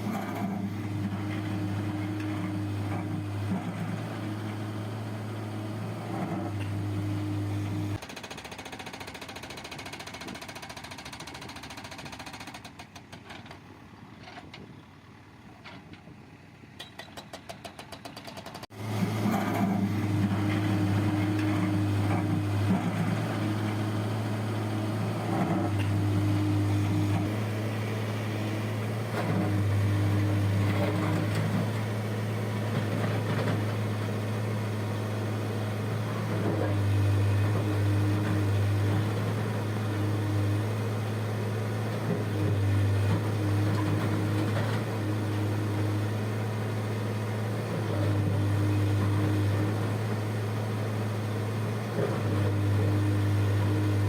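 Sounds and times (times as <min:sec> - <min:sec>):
heavy diesel engine running: 0:18.5 - 0:54.0.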